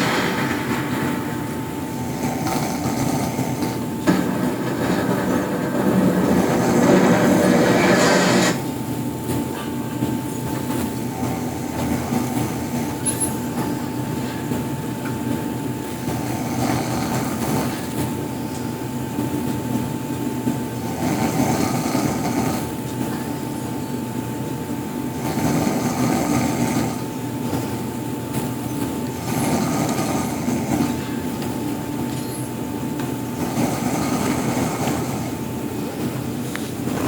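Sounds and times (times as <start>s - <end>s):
steady high-pitched hum: 0.0s - 37.0s
man snoring: 20.8s - 22.7s, 25.1s - 27.0s, 29.2s - 31.0s.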